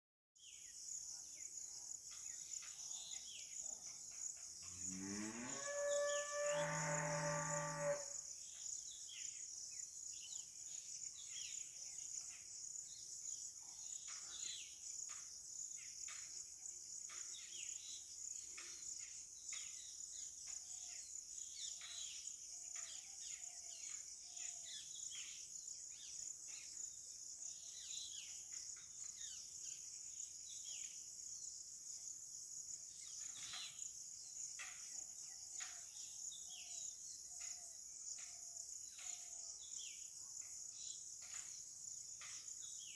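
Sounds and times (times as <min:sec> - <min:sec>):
high-pitched insect trill: 0:00.6 - 0:42.9
small birds chirping: 0:32.9 - 0:42.9.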